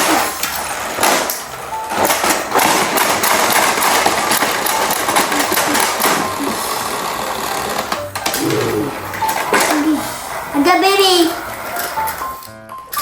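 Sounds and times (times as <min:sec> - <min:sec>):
plastic parts clicking and rattling: 0:00.0 - 0:06.6
toy train motor buzzing: 0:00.0 - 0:12.5.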